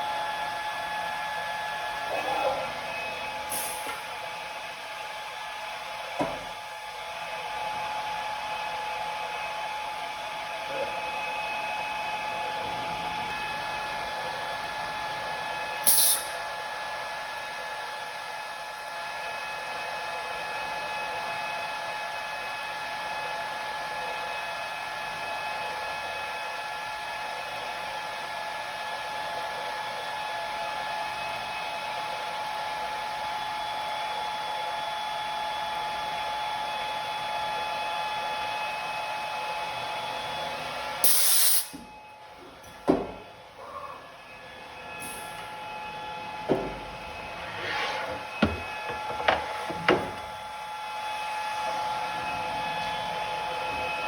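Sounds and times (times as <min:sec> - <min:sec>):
machine motors whining: 0:44.6 - 0:50.6.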